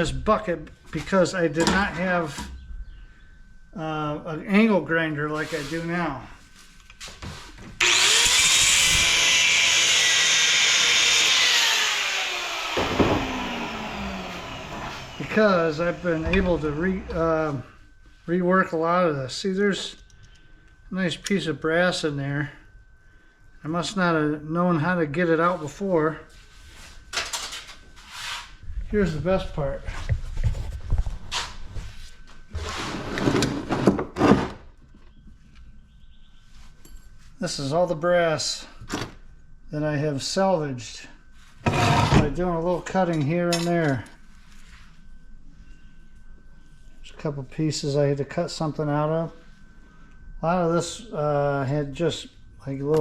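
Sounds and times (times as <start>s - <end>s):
angle grinder cutting metal: 7.8s - 17.3s.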